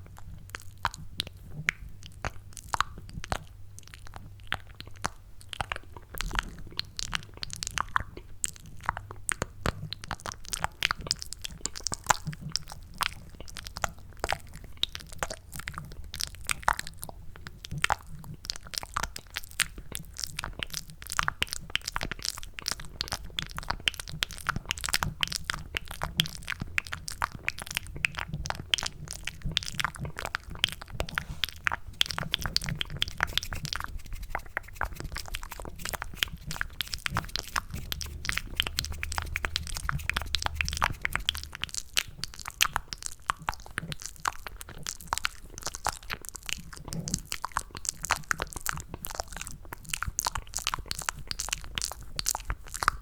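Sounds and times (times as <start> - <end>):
wet mouth clicks and smacks: 17.5 - 53.0.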